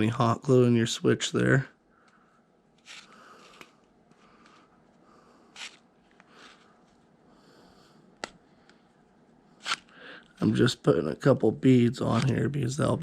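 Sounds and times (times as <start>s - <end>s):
faint handling noises: 2.0s - 7.2s, 11.9s - 13.0s.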